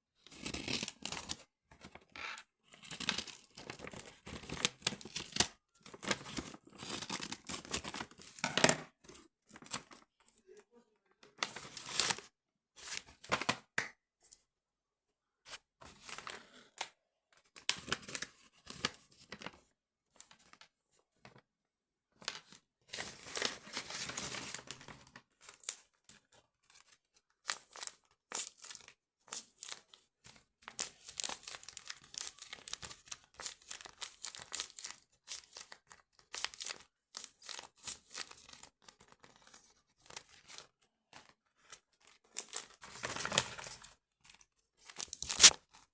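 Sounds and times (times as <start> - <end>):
crisp tearing and crinkling: 44.9 - 45.8.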